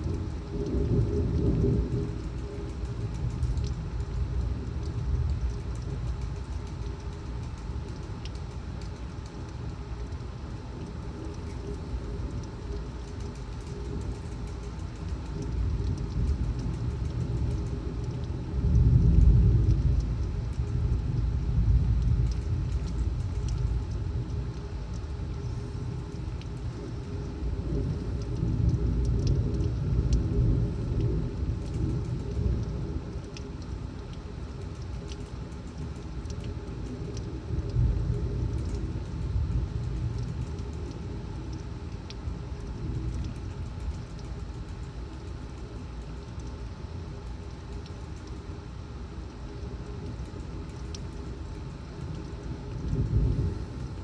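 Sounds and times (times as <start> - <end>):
low thunder rumble: 0.0 - 47.7, 48.6 - 54.0
drops ticking on window: 0.0 - 54.0
steady rain: 0.0 - 54.0
gusting wind: 49.6 - 54.0.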